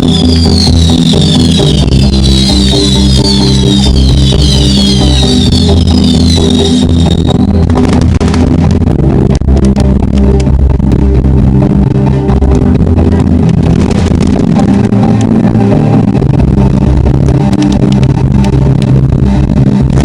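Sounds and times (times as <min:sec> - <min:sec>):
sharp crackles: 0:00.0 - 0:08.9, 0:13.4 - 0:15.4
loud music with low notes: 0:00.0 - 0:20.0.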